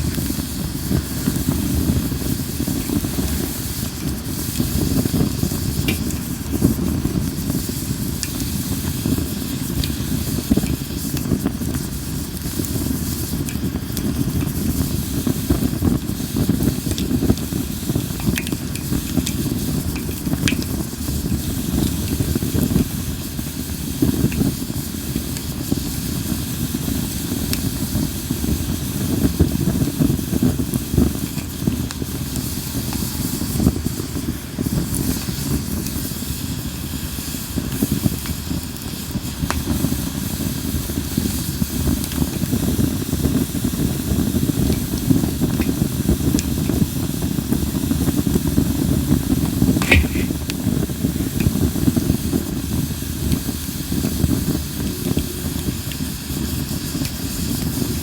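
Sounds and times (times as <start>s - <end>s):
campfire flames hissing: 0.0s - 58.0s
sharp wood pop: 49.8s - 50.4s
wood crackling: 49.8s - 50.4s.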